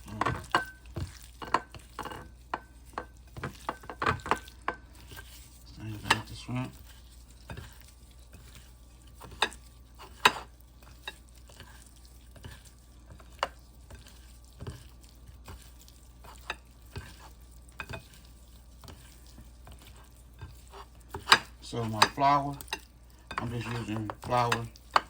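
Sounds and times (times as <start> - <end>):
clicks and knocks against a bowl: 0.1 - 5.2, 19.7 - 25.0.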